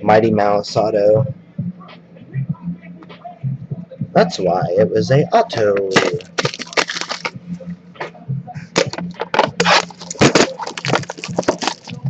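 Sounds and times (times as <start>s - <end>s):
card packs crinkling and rustling: 6.0s - 7.3s, 8.8s - 12.0s.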